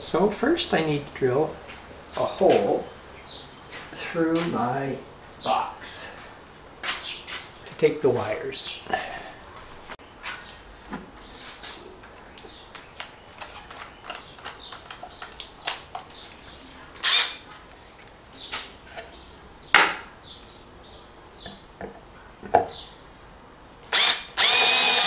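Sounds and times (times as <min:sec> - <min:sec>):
tools clicking and knocking: 0:12.7 - 0:16.1
drill rasping bursts: 0:17.0 - 0:17.4, 0:23.9 - 0:25.0.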